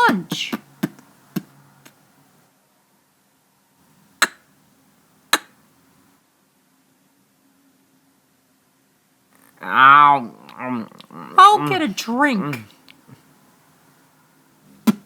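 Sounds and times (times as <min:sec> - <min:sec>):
mouth clicks: 0:00.0 - 0:02.0, 0:04.2 - 0:04.4, 0:05.3 - 0:05.6, 0:09.4 - 0:13.2, 0:14.8 - 0:15.0
faint low hum: 0:00.0 - 0:15.0.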